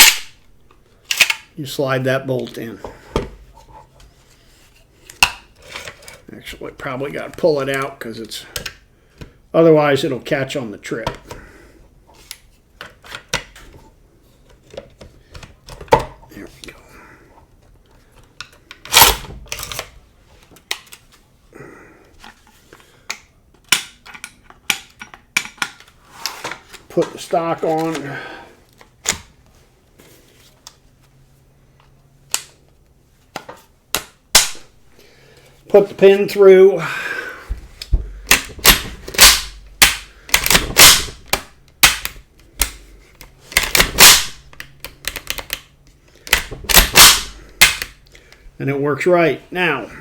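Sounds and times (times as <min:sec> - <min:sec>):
metal parts clicking and clacking: 0:01.1 - 0:01.5, 0:23.6 - 0:25.9.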